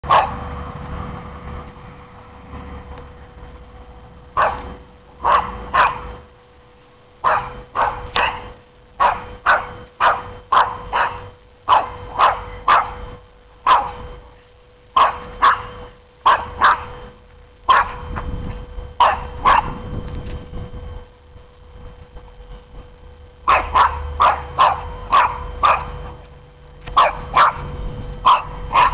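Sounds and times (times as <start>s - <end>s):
dog barking: 0.0s - 0.4s, 4.4s - 6.2s, 7.2s - 13.0s, 13.6s - 14.0s, 15.0s - 16.9s, 17.7s - 18.1s, 19.0s - 19.8s, 23.5s - 26.1s, 27.0s - 28.9s.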